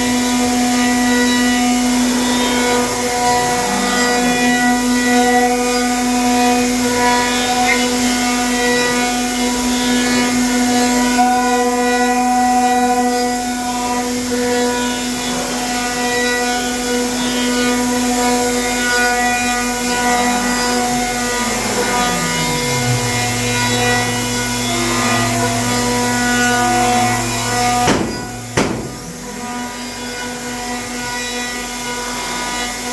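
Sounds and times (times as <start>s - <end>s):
router spindle whine: 0.0s - 32.9s
lower tone dropping in pitch: 19.7s - 31.0s.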